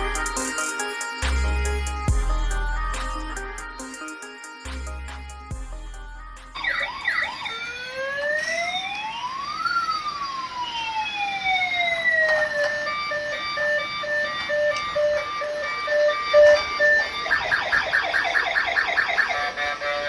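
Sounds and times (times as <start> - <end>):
toy police siren: 6.6 - 20.0.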